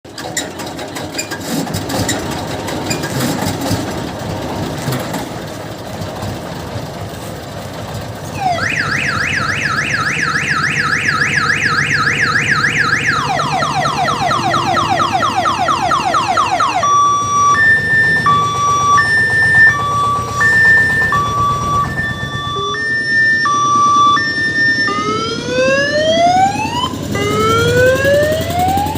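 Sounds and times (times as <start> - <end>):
diesel engine running: 0.1 - 28.9
electronic siren: 8.3 - 28.9.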